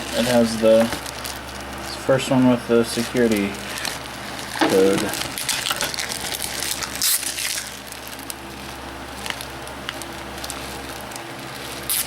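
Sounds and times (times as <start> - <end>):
electrical hum: 0.0 - 12.0
plastic case crackling: 3.0 - 8.4.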